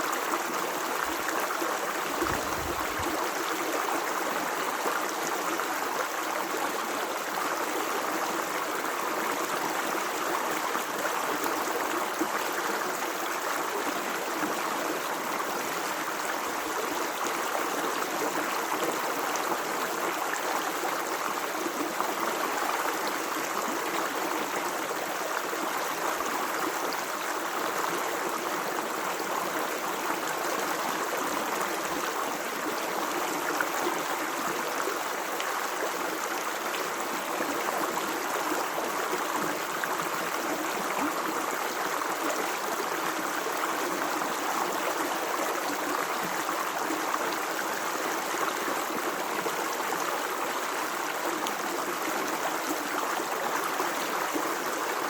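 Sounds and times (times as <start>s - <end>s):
stream water rushing: 0.0s - 7.4s.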